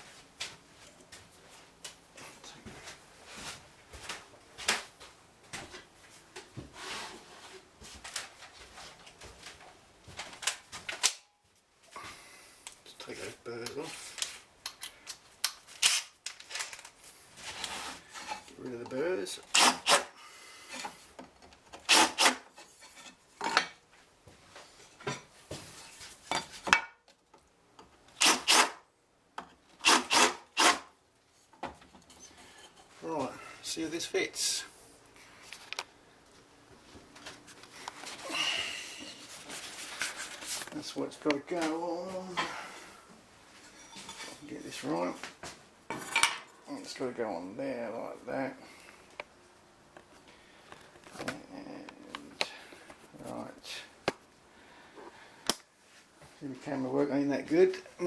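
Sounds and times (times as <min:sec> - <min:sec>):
file scraping metal: 0:21.8 - 0:23.2, 0:29.8 - 0:30.9.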